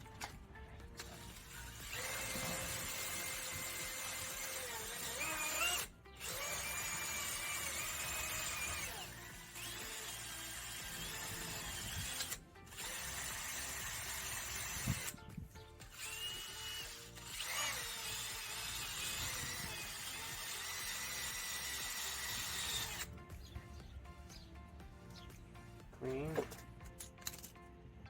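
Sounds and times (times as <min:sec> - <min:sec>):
power drill running: 0:01.0 - 0:15.2, 0:15.8 - 0:23.1.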